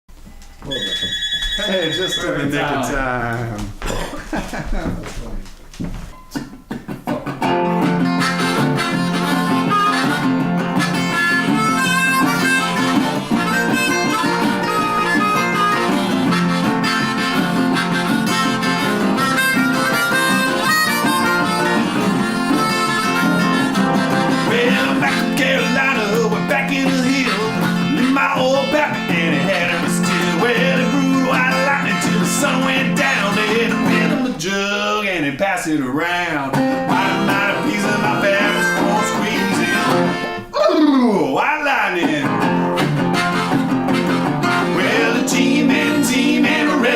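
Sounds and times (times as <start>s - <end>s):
acoustic guitar: 0.1s - 46.9s
harmonica wailing: 0.6s - 3.0s, 7.5s - 34.3s, 36.6s - 41.1s, 42.4s - 46.9s.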